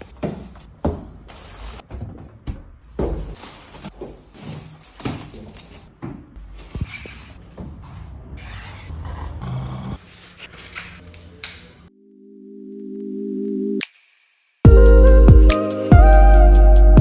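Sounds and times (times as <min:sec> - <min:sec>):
irregular knocks and thumps: 0:00.1 - 0:04.4.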